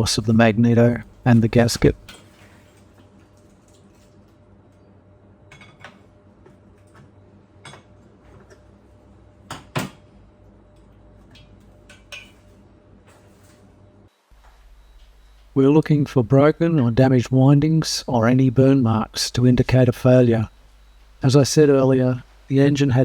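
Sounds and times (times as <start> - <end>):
faint background hum: 0.0 - 23.0.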